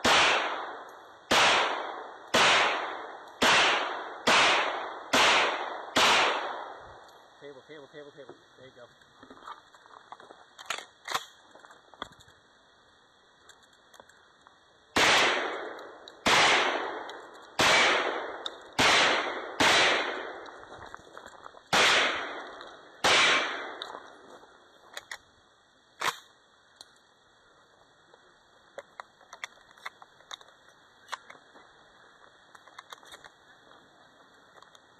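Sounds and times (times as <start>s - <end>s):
gunshots with echo: 0.0s - 6.8s, 15.0s - 20.4s, 21.7s - 23.8s.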